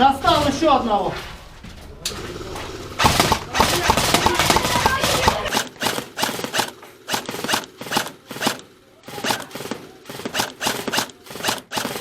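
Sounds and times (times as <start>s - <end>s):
airsoft gun shots: 3.0s - 12.0s.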